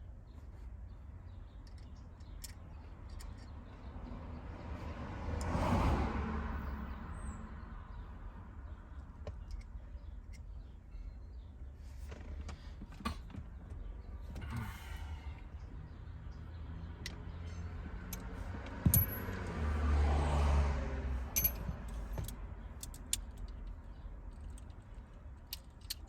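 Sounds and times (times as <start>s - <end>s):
vehicle passing by: 4.0s - 7.9s, 16.0s - 22.4s.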